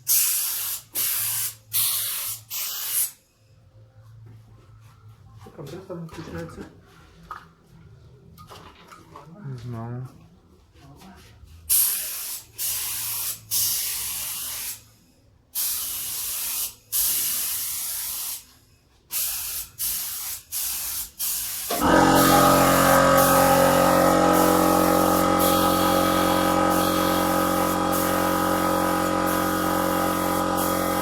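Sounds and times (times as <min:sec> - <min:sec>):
spray gun hissing bursts: 0:19.3 - 0:31.0.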